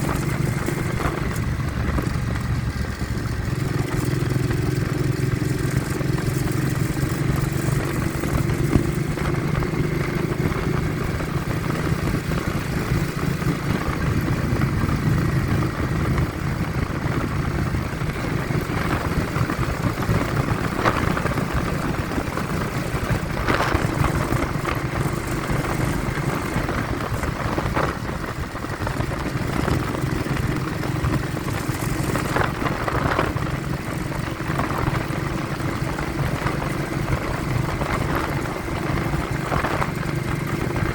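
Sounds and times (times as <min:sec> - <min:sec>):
vehicle engine running: 0:00.0 - 0:40.9
wind buffeting microphone: 0:00.0 - 0:40.9.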